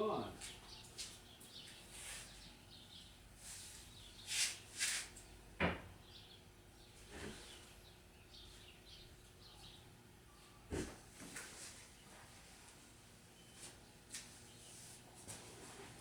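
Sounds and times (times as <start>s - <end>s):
faint scraping and shuffling: 0.3s - 5.2s, 7.0s - 7.8s, 10.4s - 16.0s.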